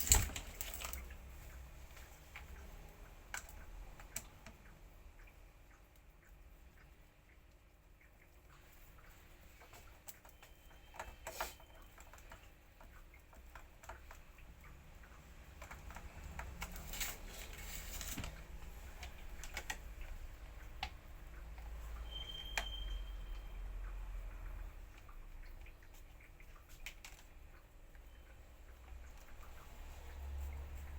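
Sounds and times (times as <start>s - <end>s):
light clicks and taps: 0.0s - 30.9s.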